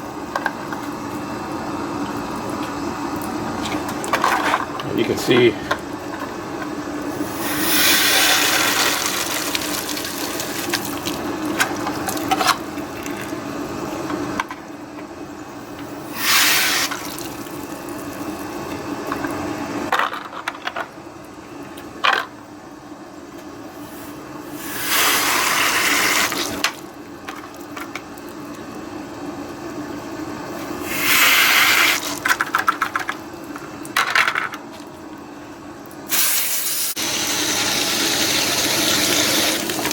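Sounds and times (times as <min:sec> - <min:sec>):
tap water running and splashing: 0:07.1 - 0:13.5, 0:15.7 - 0:19.4, 0:24.6 - 0:28.6, 0:30.8 - 0:34.0, 0:36.1 - 0:39.9.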